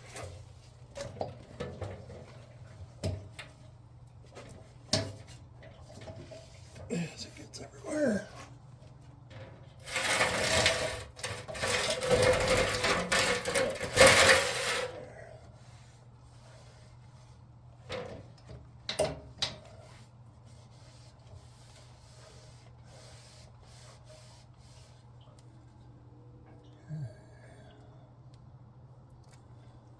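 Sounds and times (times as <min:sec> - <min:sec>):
rubbing and scraping: 0:09.7 - 0:15.1.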